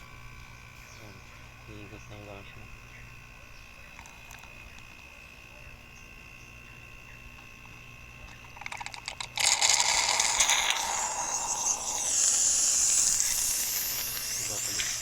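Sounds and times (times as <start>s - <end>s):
faint steady hum: 0.0s - 15.0s
loud hiss of air being sucked: 9.6s - 15.0s.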